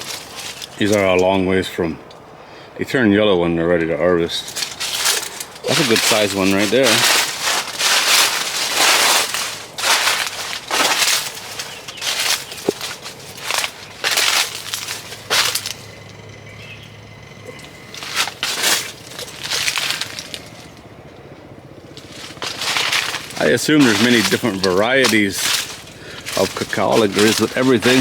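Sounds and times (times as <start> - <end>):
footsteps crunching on dry litter: 0.0 - 1.7, 3.8 - 28.0.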